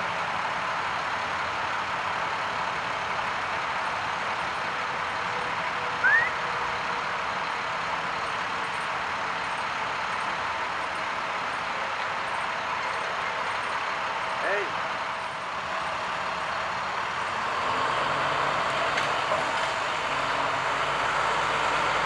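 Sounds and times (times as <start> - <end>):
car running: 0.0 - 22.0
short rising chirp: 6.0 - 6.4.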